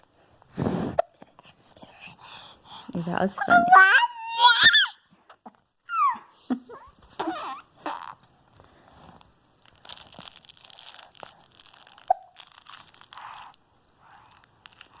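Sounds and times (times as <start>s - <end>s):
soft crackly noise: 5.0s - 15.0s.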